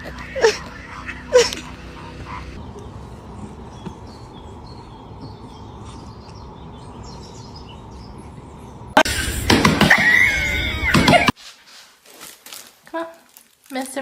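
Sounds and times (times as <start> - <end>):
birds chirping faintly: 0.0 - 9.0.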